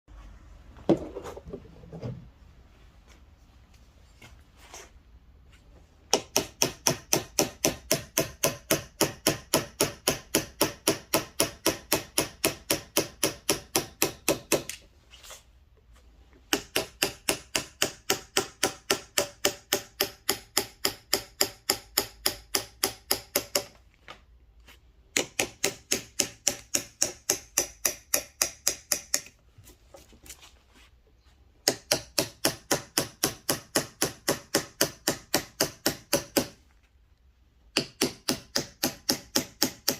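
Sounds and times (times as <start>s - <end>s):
mallet tapping chisel into wood: 6.1s - 14.8s, 16.5s - 23.7s, 25.1s - 29.3s, 31.6s - 36.6s, 37.7s - 39.9s.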